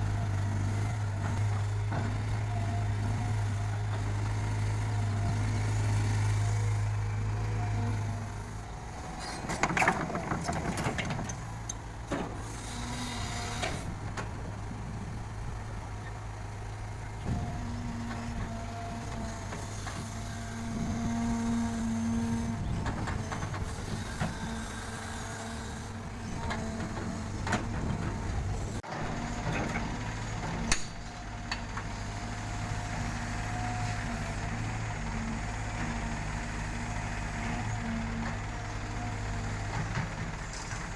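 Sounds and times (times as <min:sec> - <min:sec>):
diesel engine running: 0:00.0 - 0:40.9
sharp metal knocks and clanks: 0:30.7 - 0:31.0.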